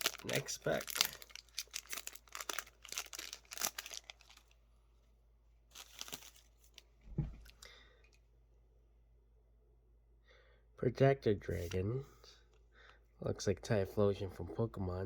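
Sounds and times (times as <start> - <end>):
foil pack tearing: 0.0 - 4.4, 5.7 - 6.5
soft thump: 7.0 - 7.5.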